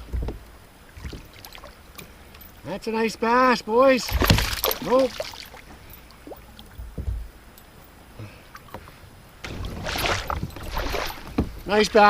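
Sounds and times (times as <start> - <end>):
knocks in a kayak: 4.1 - 4.8, 9.4 - 11.7.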